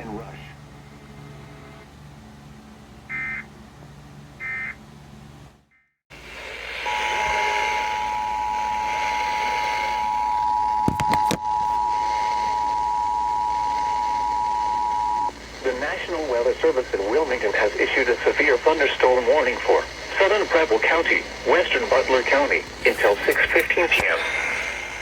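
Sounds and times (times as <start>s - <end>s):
hissy radio signal: 6.2s - 25.0s.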